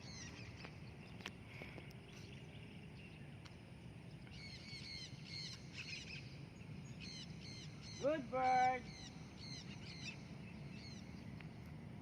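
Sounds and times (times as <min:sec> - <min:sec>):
low outdoor rumble: 0:00.0 - 0:12.0
high-pitched bird calls: 0:04.2 - 0:11.3.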